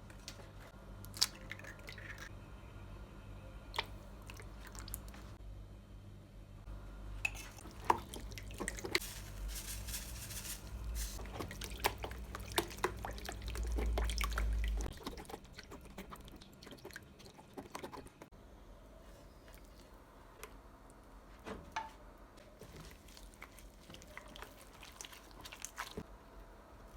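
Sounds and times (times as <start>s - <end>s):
liquid squishing: 7.6s - 18.3s, 22.6s - 26.1s.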